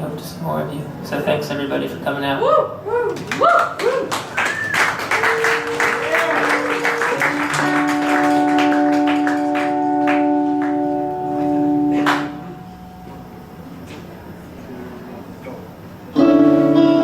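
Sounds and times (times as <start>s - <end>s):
audience clapping and cheering: 3.1s - 11.2s, 12.0s - 12.4s
instrument holding a steady chord: 6.6s - 13.8s.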